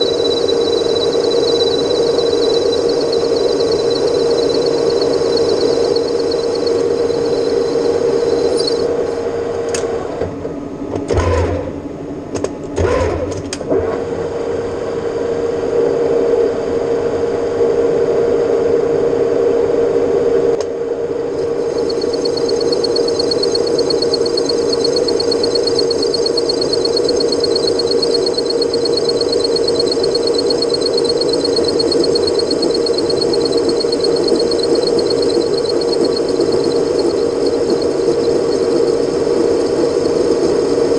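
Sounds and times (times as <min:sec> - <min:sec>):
metal lathe humming: 0:00.0 - 0:09.5.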